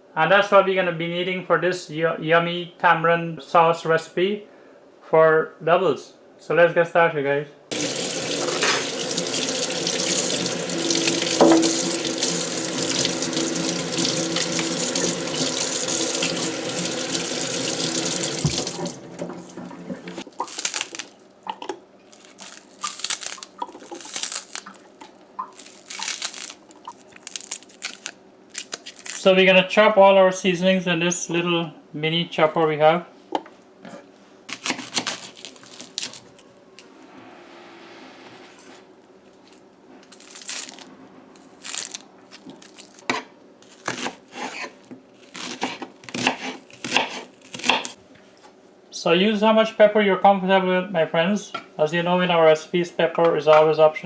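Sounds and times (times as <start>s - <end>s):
knife chopping vegetables: 10.1s - 16.9s, 17.5s - 19.0s, 34.5s - 35.5s, 43.1s - 48.0s
dry crinkling and tearing: 20.2s - 29.4s, 34.5s - 36.9s, 39.3s - 48.0s.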